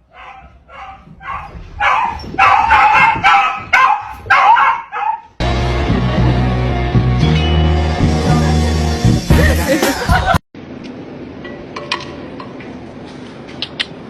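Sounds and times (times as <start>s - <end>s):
music: 5.4s - 10.4s.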